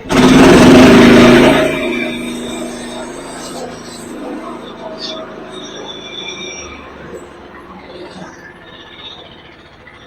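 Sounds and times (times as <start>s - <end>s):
bandsaw mill cutting log: 0.0s - 9.4s.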